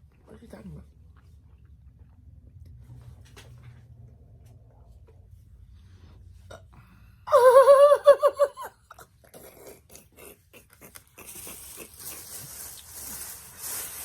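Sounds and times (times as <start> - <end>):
high-pitched wavering laugh: 7.3 - 9.0.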